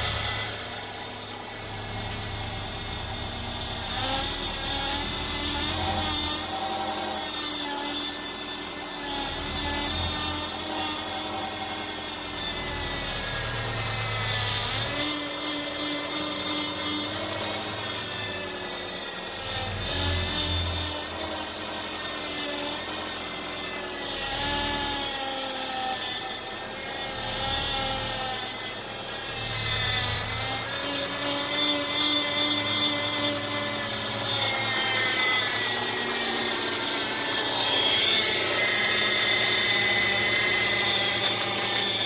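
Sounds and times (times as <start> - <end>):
power steering pump whining: 16.1 - 24.9, 32.6 - 42.0.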